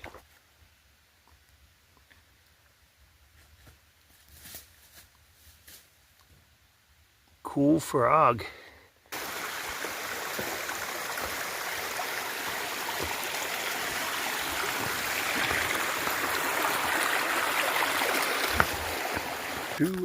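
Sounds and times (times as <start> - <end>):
stream running: 9.1 - 20.0.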